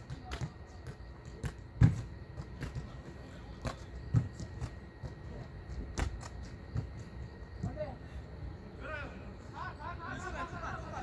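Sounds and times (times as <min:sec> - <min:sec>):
knocks and dull thuds: 0:00.0 - 0:03.0, 0:03.6 - 0:07.9.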